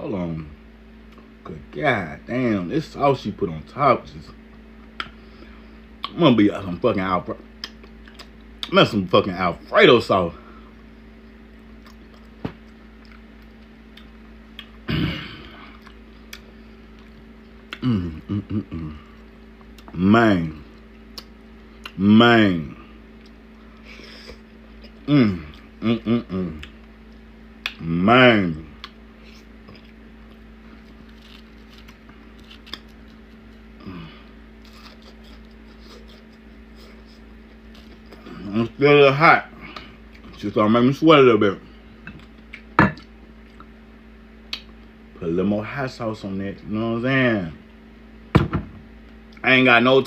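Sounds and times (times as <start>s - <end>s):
steady low hum: 0.0s - 50.0s
chewing with wet clicks: 7.6s - 8.7s, 11.5s - 14.8s, 20.7s - 22.0s
person chewing food: 11.2s - 14.8s, 15.4s - 20.0s, 23.0s - 27.8s, 28.8s - 38.5s
person humming mm: 17.7s - 19.2s, 25.0s - 26.8s, 33.8s - 36.2s.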